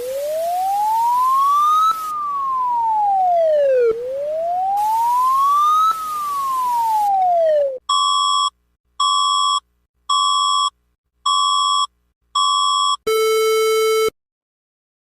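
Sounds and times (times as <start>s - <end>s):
background hiss: 0.0s - 2.4s, 3.8s - 7.3s
emergency siren wailing: 0.0s - 7.8s.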